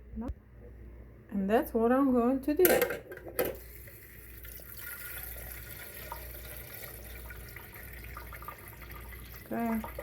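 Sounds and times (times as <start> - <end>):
water running into plastic reservoir: 3.5 - 10.0.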